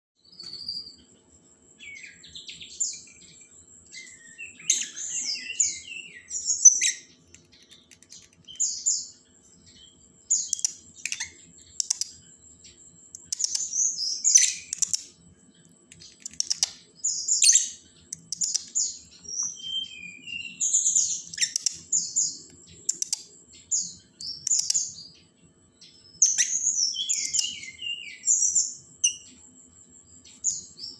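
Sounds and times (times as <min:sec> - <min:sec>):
shrill bird chirps and clicks: 0:00.3 - 0:29.5, 0:30.1 - 0:30.9
lovebird chattering: 0:06.6 - 0:09.0, 0:10.3 - 0:12.2, 0:13.2 - 0:15.1, 0:15.9 - 0:19.1, 0:20.5 - 0:23.2, 0:24.3 - 0:24.9, 0:26.2 - 0:27.8.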